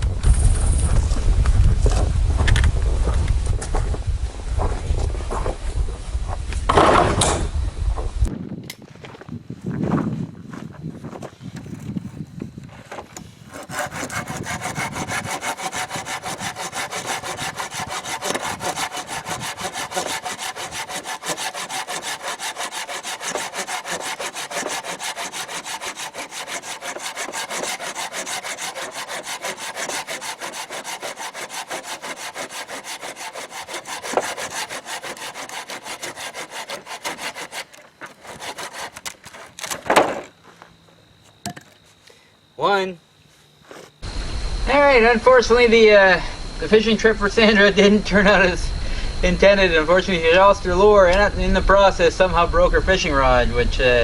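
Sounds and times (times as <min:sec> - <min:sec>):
hand saw cutting wood: 0:13.4 - 0:40.0.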